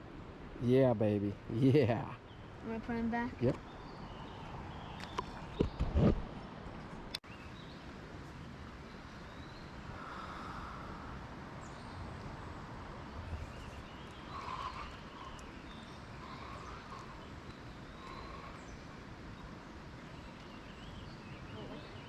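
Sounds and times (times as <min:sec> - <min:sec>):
faint short chirping calls: 0:13.1 - 0:19.6.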